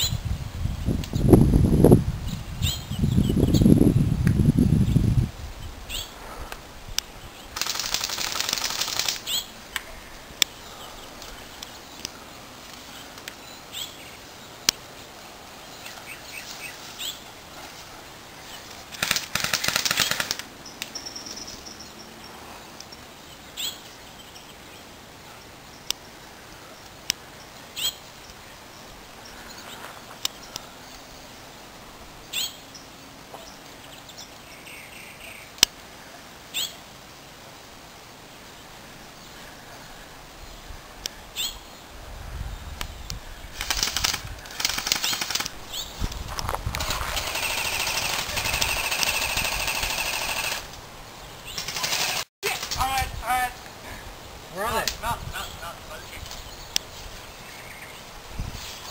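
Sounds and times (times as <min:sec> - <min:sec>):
airsoft gun full-auto fire: 0:07.6 - 0:09.2, 0:19.0 - 0:20.4, 0:43.6 - 0:45.5, 0:47.2 - 0:50.7, 0:51.6 - 0:52.3.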